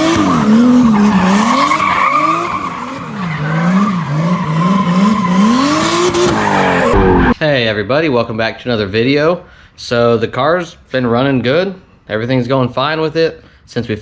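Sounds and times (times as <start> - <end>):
car engine revving: 0.0 - 7.4
tyres squealing: 0.0 - 7.4.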